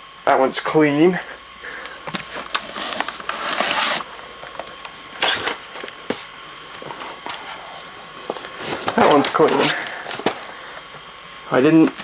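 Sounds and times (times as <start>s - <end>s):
laptop rustling scrape: 2.2s - 4.1s, 5.2s - 10.4s.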